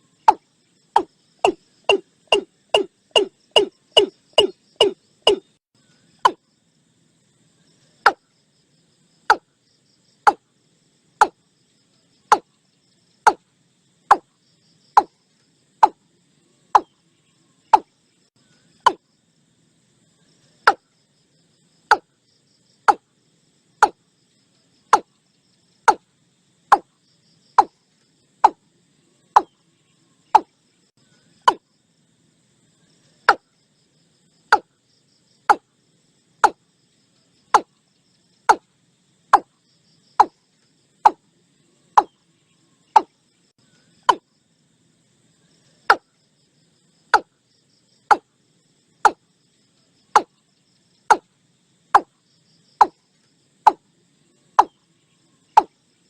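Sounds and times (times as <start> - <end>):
bird calling short sharp notes: 1.0 - 5.5.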